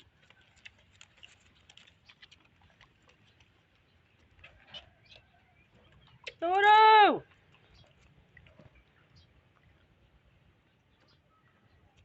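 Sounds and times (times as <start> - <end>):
faint small clicks and rustles: 0.0 - 5.3.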